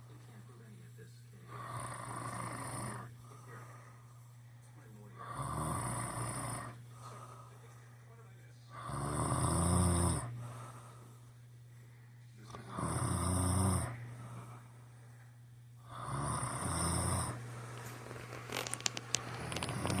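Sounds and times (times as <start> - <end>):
steady low hum: 0.0 - 20.0
man snoring: 1.4 - 3.5, 5.1 - 6.8, 8.7 - 10.9, 12.5 - 14.6, 15.8 - 17.6, 18.6 - 20.0.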